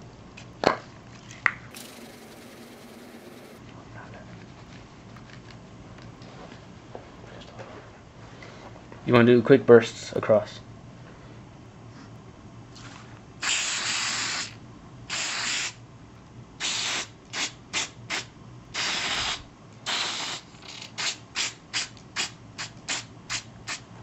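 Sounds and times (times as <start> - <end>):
aerosol spray can hissing: 1.7 - 3.6.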